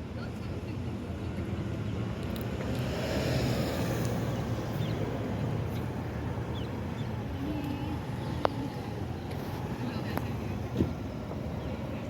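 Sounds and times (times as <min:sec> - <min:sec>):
boat engine rumble: 0:00.0 - 0:12.0.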